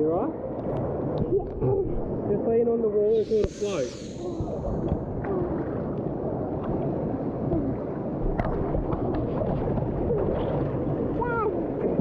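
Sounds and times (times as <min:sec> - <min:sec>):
water churning and splashing: 0:03.1 - 0:12.0.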